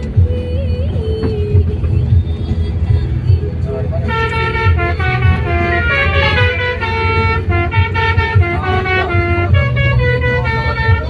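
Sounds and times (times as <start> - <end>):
low rumble of bus: 0.0 - 11.0
bus horn playing melody: 3.7 - 11.0.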